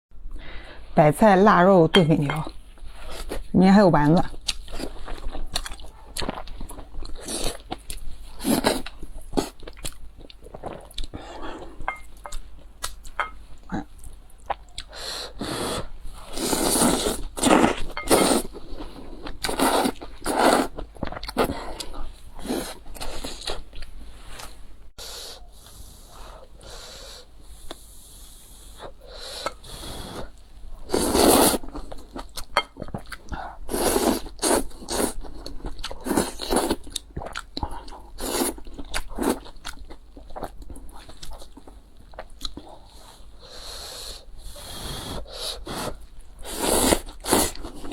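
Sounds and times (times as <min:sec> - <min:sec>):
chewing and biting: 0:04.3 - 0:11.2, 0:34.3 - 0:43.0.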